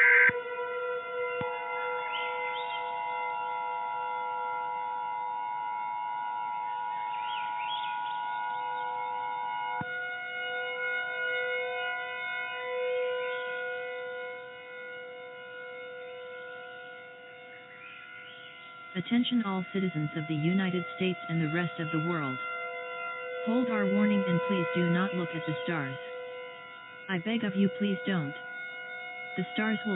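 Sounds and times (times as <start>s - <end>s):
siren tones chord: 0.0s - 29.9s
emergency alert attention tone: 18.2s - 29.9s.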